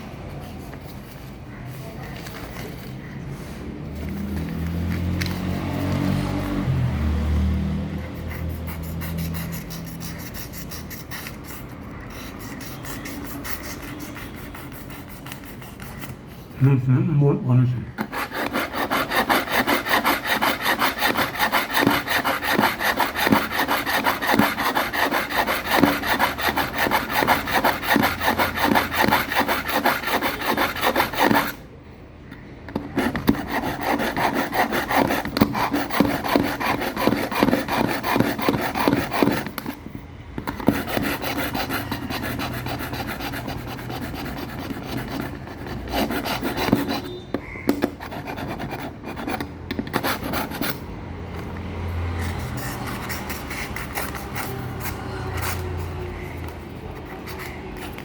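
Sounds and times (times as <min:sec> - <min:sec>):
knife scraping in sharpener: 0:18.0 - 0:31.6, 0:40.5 - 0:50.8.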